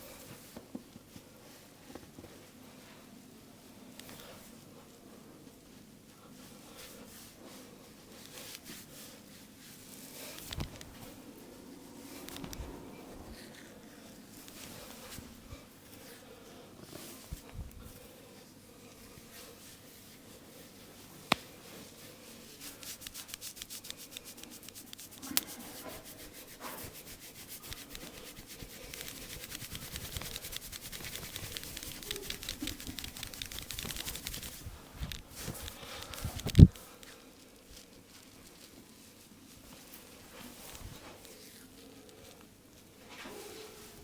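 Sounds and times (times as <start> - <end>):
hands rubbing hair: 6.6 - 16.2, 19.2 - 44.0.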